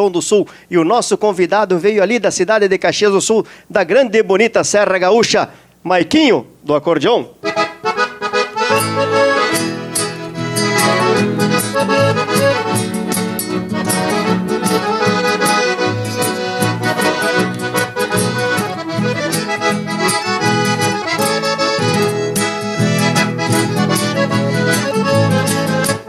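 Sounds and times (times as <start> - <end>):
piano accordion dance music: 7.4 - 26.0.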